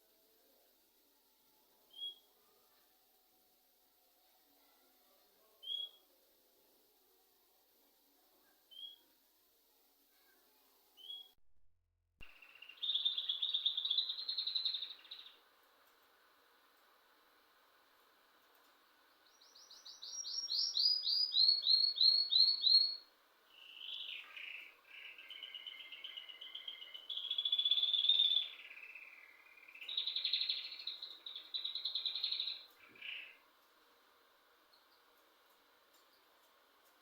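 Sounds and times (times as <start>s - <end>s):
songbird singing: 5.6s - 6.0s, 8.7s - 9.0s, 12.2s - 15.5s, 18.9s - 33.5s.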